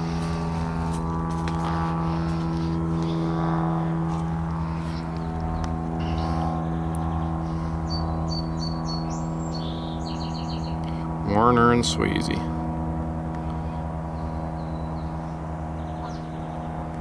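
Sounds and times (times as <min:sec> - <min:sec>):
engine idling: 0:00.0 - 0:17.0
high bird chirps: 0:07.9 - 0:10.8.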